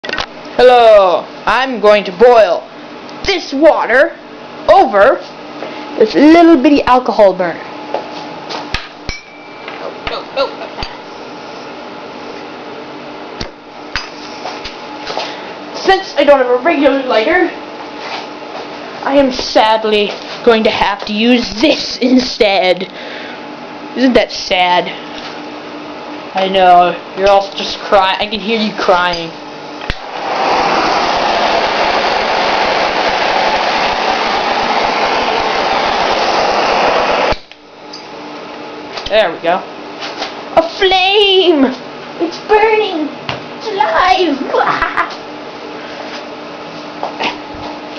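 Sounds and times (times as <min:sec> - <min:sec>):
low room hum: 0:00.0 - 0:47.9
gas torch hissing roar: 0:29.7 - 0:37.6.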